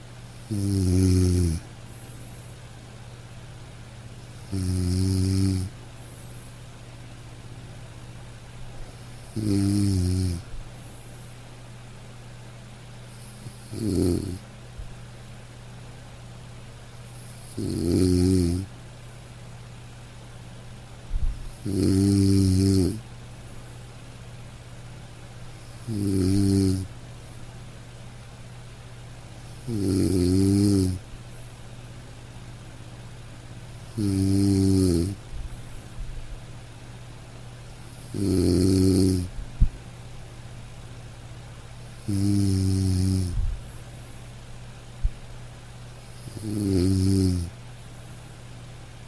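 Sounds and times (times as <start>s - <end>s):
steady low hum: 0.0s - 49.0s
person snoring: 0.4s - 2.4s, 4.4s - 6.4s, 9.2s - 10.4s, 13.2s - 14.4s, 17.2s - 18.7s, 21.5s - 23.0s, 25.8s - 26.9s, 29.5s - 31.0s, 33.9s - 35.2s, 37.9s - 39.3s, 42.0s - 43.4s, 46.1s - 47.5s.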